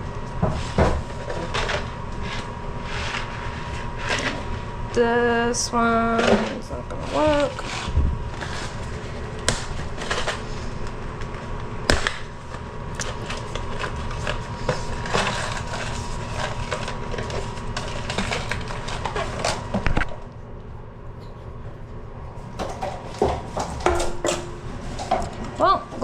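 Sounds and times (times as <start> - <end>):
plastic toilet tank parts rattling: 22.6 - 25.4.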